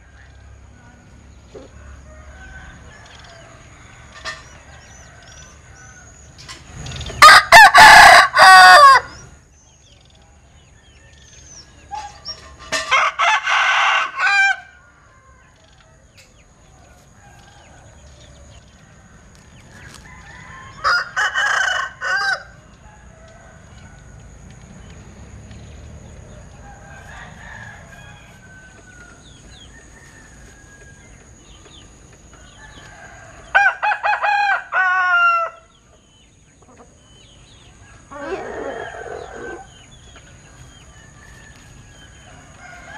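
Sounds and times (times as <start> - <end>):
rooster crowing: 1.6 - 6.3, 7.2 - 9.2, 12.9 - 16.2, 16.8 - 24.3, 26.3 - 31.3, 32.3 - 35.7, 37.8 - 39.8, 40.8 - 42.9.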